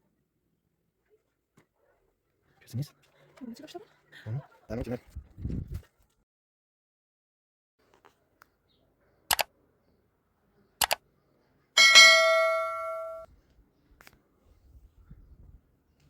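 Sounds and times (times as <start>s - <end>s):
ringing metallic clang: 11.8s - 13.3s.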